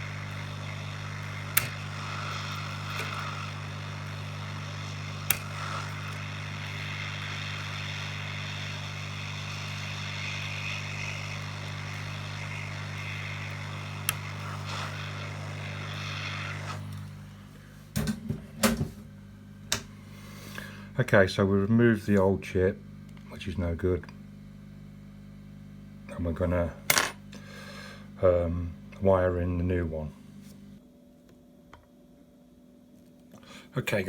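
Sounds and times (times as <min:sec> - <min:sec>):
hot air station blowing: 0:00.0 - 0:19.1, 0:19.7 - 0:21.0, 0:27.4 - 0:28.2.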